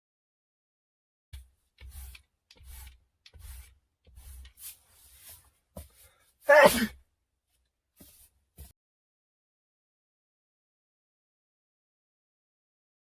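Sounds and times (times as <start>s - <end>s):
person sneezing: 6.5s - 7.0s.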